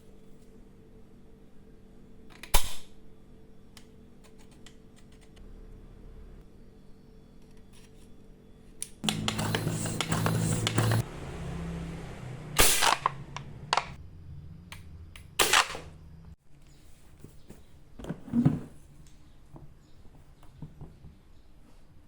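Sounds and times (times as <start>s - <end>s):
clattering mechanical noise: 9.0s - 14.0s
low hum: 9.0s - 16.4s
airgun shots: 12.6s - 14.0s, 15.4s - 15.9s.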